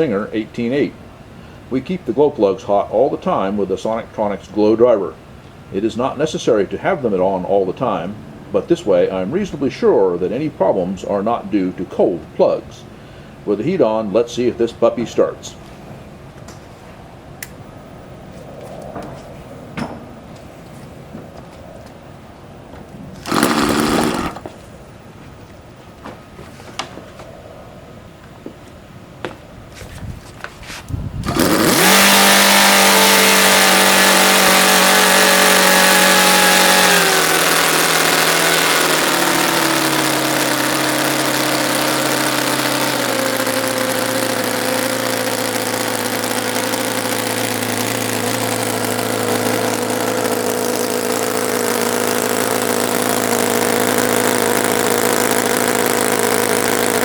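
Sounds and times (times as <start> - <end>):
engine starter clicks: 23.2 - 24.5, 31.2 - 57.0
model radial engine running: 23.2 - 24.5, 31.2 - 57.0.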